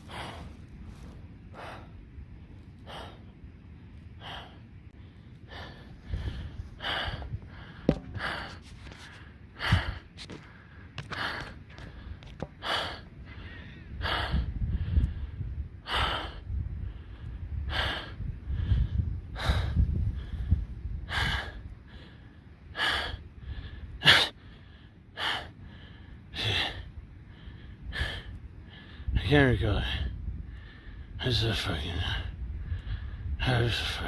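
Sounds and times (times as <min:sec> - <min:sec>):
low rumble: 0:00.0 - 0:22.4
man breathing hard: 0:00.0 - 0:34.0.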